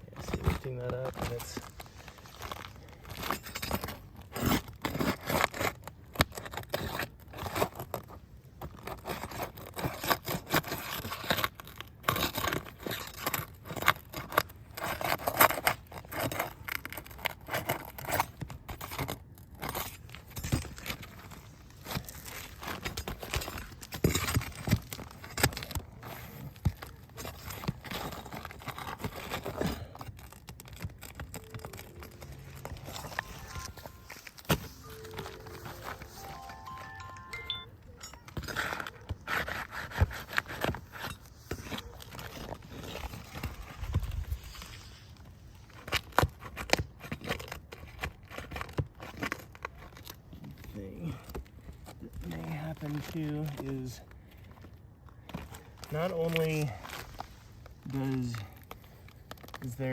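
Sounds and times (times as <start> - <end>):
roof shingles scraping and tearing: 0.0 - 36.7, 38.6 - 59.9.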